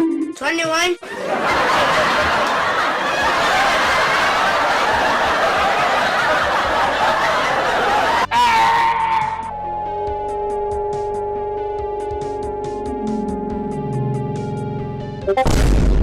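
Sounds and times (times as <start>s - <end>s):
crowd laughing: 1.0s - 8.6s.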